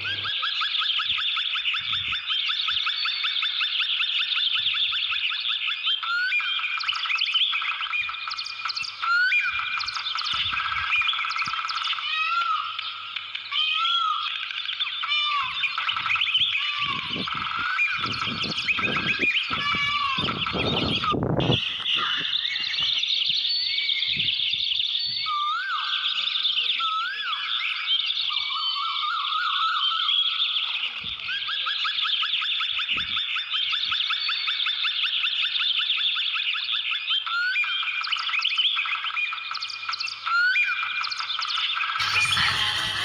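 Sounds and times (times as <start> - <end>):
birds chirping and singing: 0.0 - 0.3, 14.2 - 24.5, 39.3 - 43.0.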